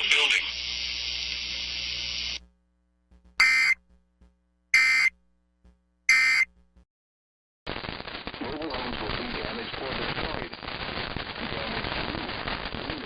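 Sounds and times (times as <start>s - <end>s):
steady hiss: 0.0s - 2.4s
noisy broadcast audio: 0.0s - 6.8s, 7.7s - 13.0s
harsh digital screeches: 3.4s - 3.8s, 4.8s - 5.1s, 6.1s - 6.5s.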